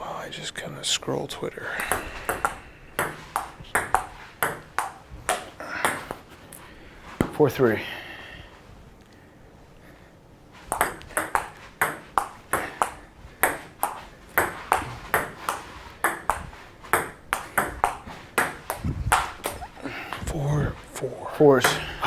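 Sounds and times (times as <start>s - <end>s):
table tennis ball clicking: 1.8s - 6.2s, 10.7s - 19.7s.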